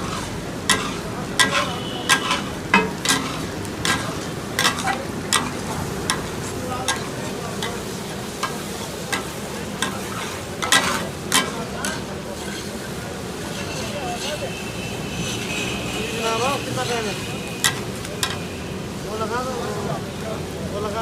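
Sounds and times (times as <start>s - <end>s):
metal spatulas clanking on griddle: 0.0s - 12.9s, 17.6s - 18.4s
food sizzling: 0.0s - 20.5s.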